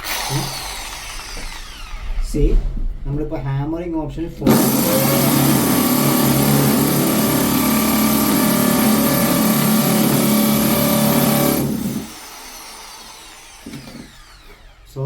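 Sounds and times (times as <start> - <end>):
drill motor winding down: 0.0 - 2.2, 4.5 - 15.0
hammer drill drilling concrete: 0.0 - 2.2, 4.5 - 14.9.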